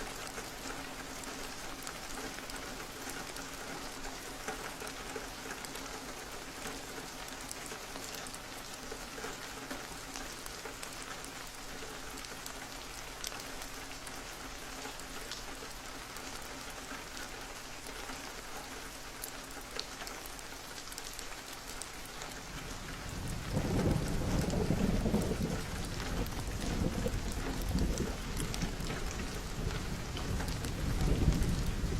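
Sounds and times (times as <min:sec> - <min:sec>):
steady rain: 0:00.0 - 0:31.9
raindrops ticking: 0:17.0 - 0:31.9
low rumble of thunder: 0:22.3 - 0:31.9.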